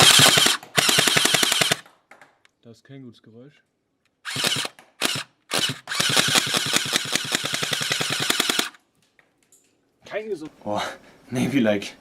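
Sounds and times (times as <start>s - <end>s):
airsoft gun firing bursts: 0.0s - 1.9s, 4.3s - 8.8s.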